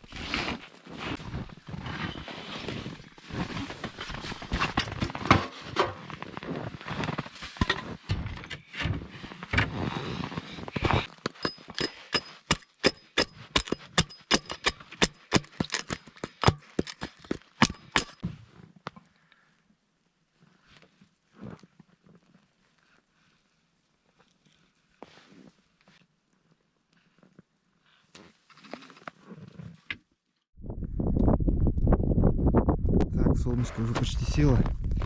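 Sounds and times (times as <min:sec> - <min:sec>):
rustling: 0:00.0 - 0:08.1.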